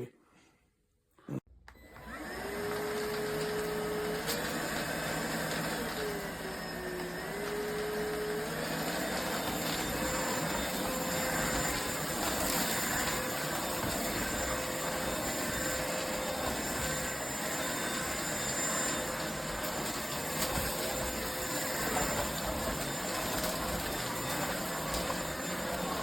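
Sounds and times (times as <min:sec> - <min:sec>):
stick vacuum running: 0:01.7 - 0:26.0.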